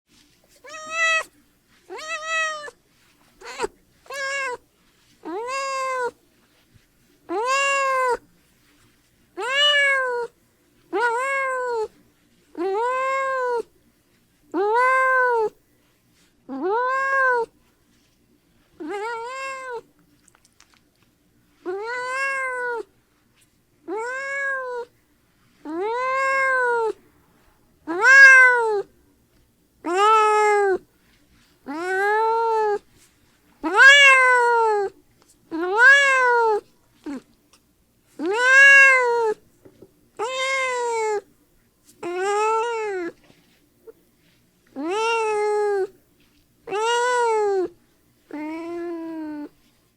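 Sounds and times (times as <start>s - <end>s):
cat meowing: 0.5s - 1.3s, 1.9s - 2.8s, 3.4s - 4.6s, 5.2s - 6.2s, 7.3s - 8.2s, 9.4s - 12.0s, 12.6s - 13.7s, 14.5s - 15.6s, 16.5s - 17.5s, 18.8s - 19.9s, 21.6s - 22.9s, 23.9s - 24.9s, 25.7s - 27.0s, 27.8s - 28.9s, 29.8s - 30.8s, 31.7s - 32.9s, 33.6s - 37.2s, 38.2s - 39.4s, 40.2s - 41.3s, 42.0s - 43.2s, 44.7s - 46.0s, 46.7s - 49.6s.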